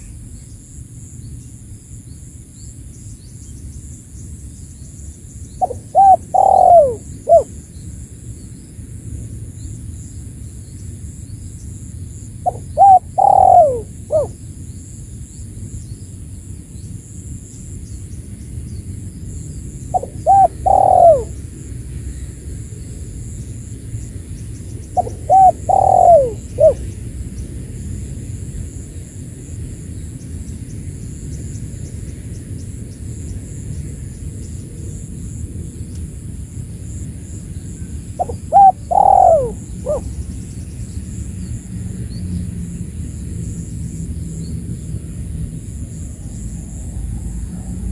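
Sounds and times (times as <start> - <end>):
dove cooing: 5.6 - 7.5, 12.4 - 14.4, 19.9 - 21.4, 25.0 - 26.9, 38.2 - 40.2.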